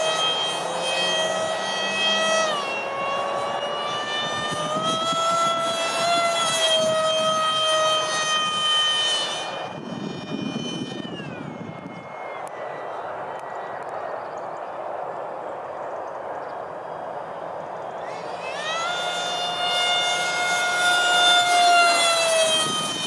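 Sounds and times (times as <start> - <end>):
electric ducted fan whining: 0.0 - 23.0.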